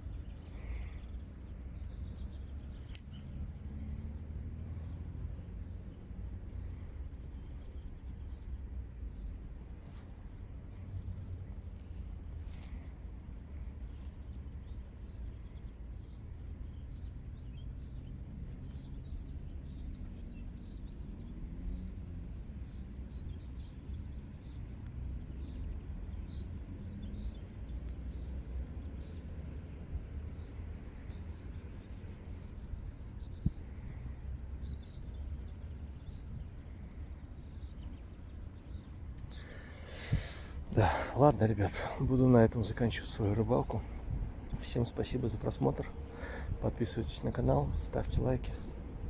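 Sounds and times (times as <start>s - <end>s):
small birds chirping: 0.0s - 49.0s
faint bird chirps: 30.3s - 49.0s.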